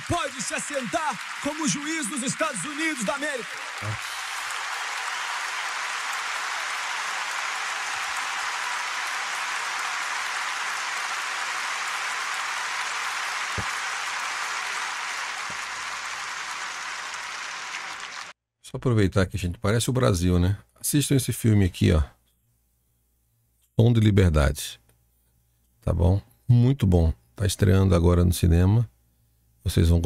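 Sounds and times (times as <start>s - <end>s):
congregation applauding: 0.0s - 18.4s.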